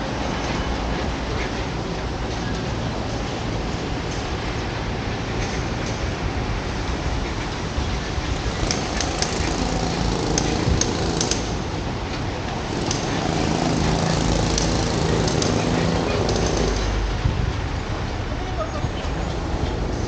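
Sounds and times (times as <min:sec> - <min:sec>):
constant noisy rush: 0:00.0 - 0:20.0
motor drone: 0:08.5 - 0:11.8, 0:12.6 - 0:17.0.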